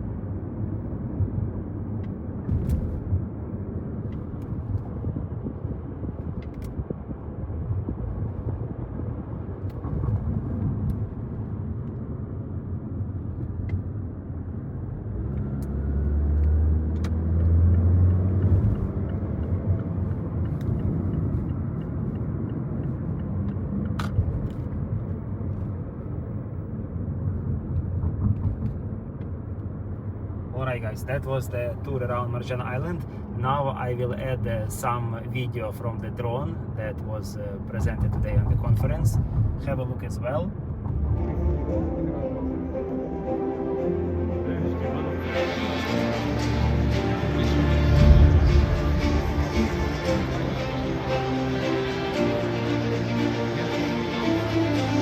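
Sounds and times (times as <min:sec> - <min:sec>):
car road and engine noise: 0:00.0 - 0:55.0
low hum: 0:37.6 - 0:55.0.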